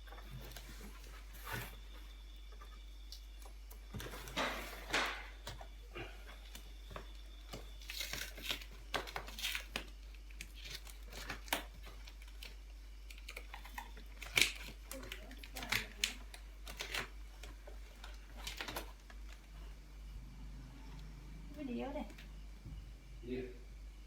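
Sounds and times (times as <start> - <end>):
packaging rustling and tearing: 7.6 - 19.4.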